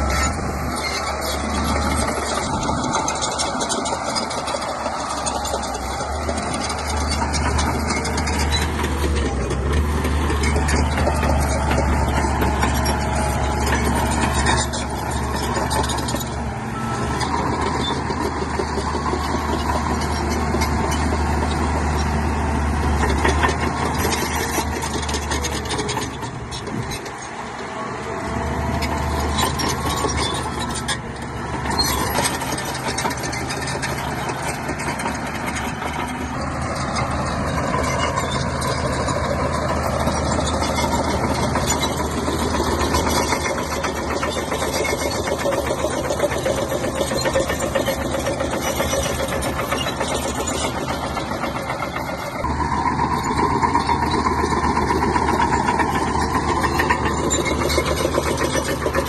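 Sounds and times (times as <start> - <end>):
bulldozer diesel engine running: 0.0 - 59.0.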